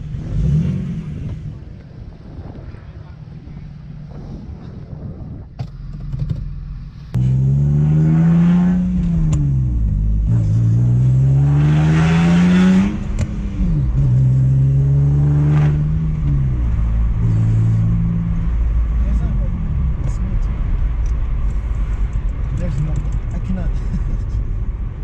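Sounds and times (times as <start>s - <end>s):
car engine accelerating hard: 7.1s - 24.8s.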